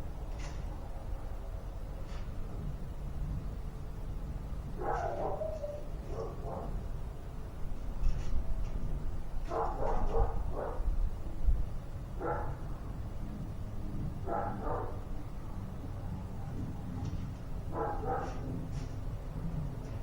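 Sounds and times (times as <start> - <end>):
dog barking: 4.8 - 6.8, 9.5 - 10.9, 12.2 - 12.7, 14.2 - 15.1, 17.7 - 18.6.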